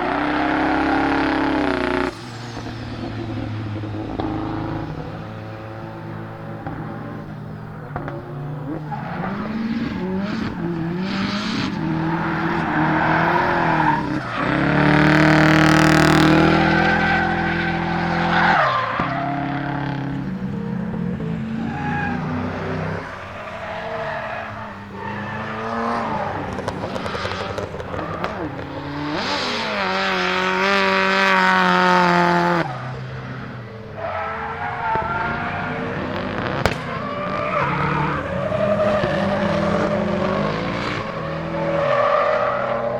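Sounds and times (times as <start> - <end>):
tyres squealing: 0.0 - 33.1, 33.9 - 42.9
car engine revving with misfire: 0.0 - 42.9
sharp crack: 36.2 - 37.4.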